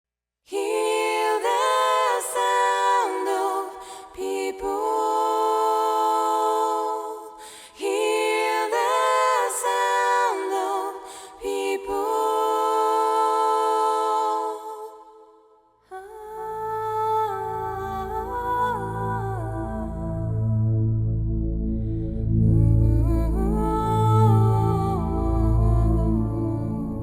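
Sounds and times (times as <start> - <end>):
voices singing in close harmony: 0.5 - 20.8.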